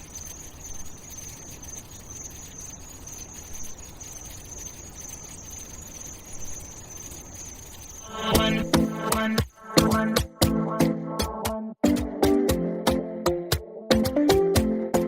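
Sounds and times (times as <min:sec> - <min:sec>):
high-pitched insect-like buzz: 0:00.0 - 0:10.6.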